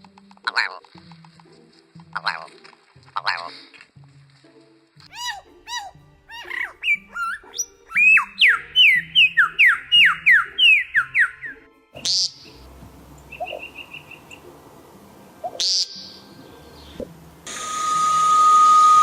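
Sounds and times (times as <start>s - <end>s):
background music: 0.0s - 18.1s
bird whistling: 5.1s - 12.6s, 13.2s - 14.5s, 15.4s - 19.0s.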